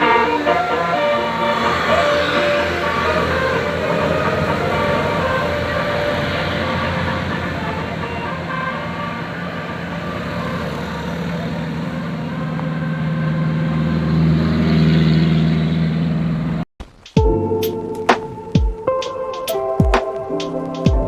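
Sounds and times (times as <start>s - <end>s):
faint steady horn tones: 0.0s - 14.1s
bus engine running: 0.0s - 18.5s.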